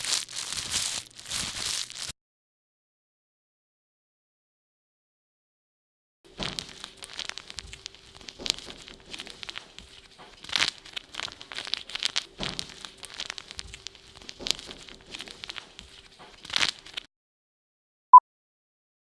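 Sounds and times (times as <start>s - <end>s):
rustling and crinkling: 0.0s - 2.1s, 6.3s - 17.1s.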